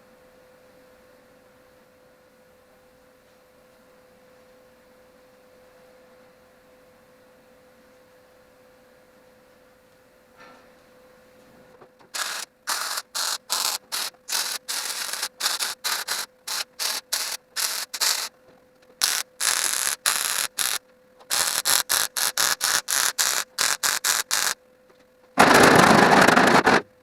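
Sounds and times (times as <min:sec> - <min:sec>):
welding arc crackling bursts: 0:12.2 - 0:18.3, 0:19.0 - 0:24.6, 0:25.4 - 0:26.8.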